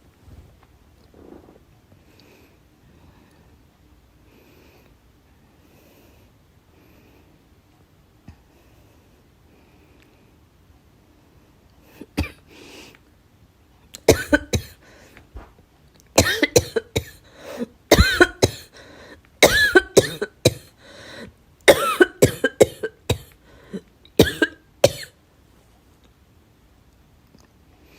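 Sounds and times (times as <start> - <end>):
girl coughing: 12.1 - 12.4, 14.1 - 14.8, 16.2 - 17.2, 17.9 - 18.7, 19.4 - 20.8, 21.7 - 25.2.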